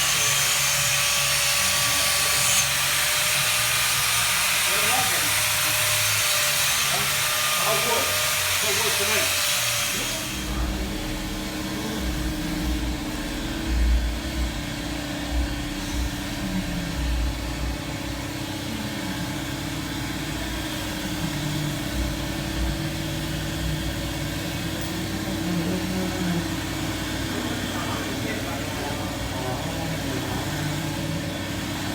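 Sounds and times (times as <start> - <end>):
car engine idling: 10.1 - 31.9.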